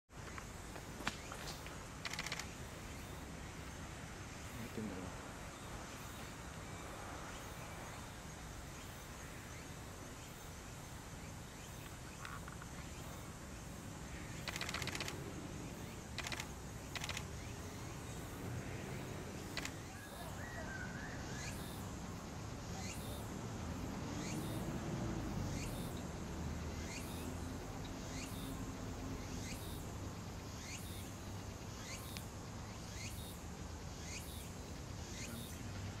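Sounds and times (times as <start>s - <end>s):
outdoor background noise: 0.1s - 36.0s.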